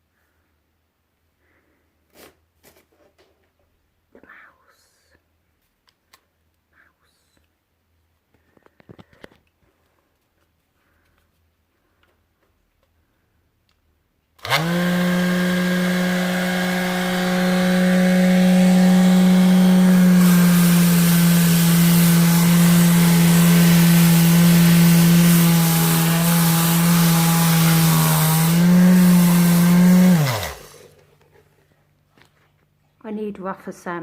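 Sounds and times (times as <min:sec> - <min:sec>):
sander motor hum: 0:14.4 - 0:31.0
sandpaper hissing: 0:16.6 - 0:31.0.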